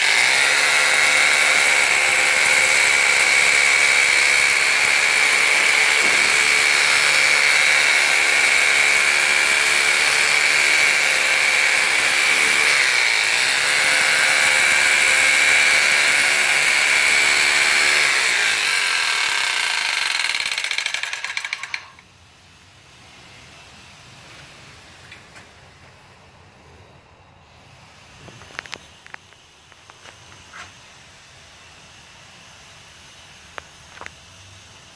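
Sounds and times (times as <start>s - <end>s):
masonry saw cutting mortar: 0.0s - 22.0s.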